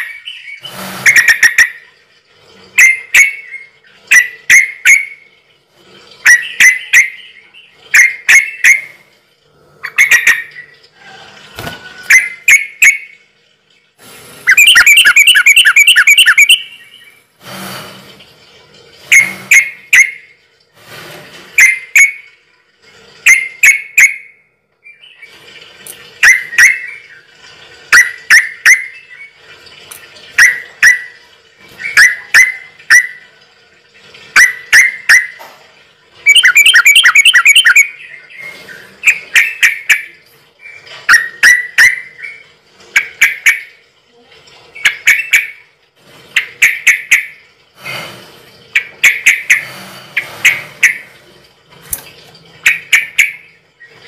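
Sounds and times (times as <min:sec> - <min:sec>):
bird chirping loudly: 0:14.5 - 0:17.2, 0:36.3 - 0:38.3.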